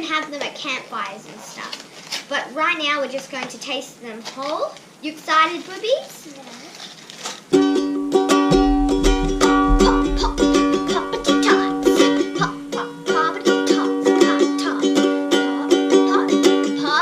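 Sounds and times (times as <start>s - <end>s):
plucked string music: 7.5s - 16.9s.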